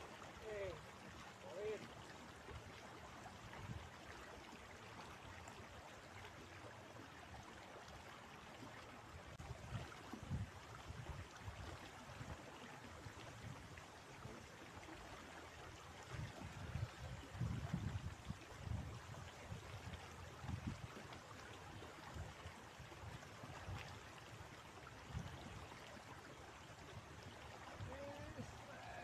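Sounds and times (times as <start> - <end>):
river water flowing: 0.0 - 29.0
wind buffeting microphone: 9.4 - 11.7, 16.0 - 21.0.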